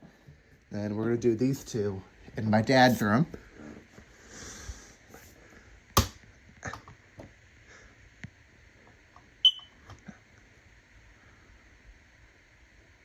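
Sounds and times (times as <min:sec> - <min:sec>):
brief high-pitched chirp: 0:09.4 - 0:09.7.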